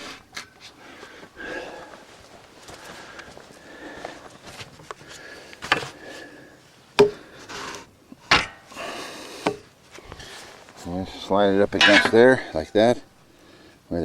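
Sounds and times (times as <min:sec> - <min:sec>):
sharp knocks: 0:07.0 - 0:07.2, 0:08.3 - 0:08.7
wood and metal parts scraping: 0:07.0 - 0:08.8, 0:09.5 - 0:13.0.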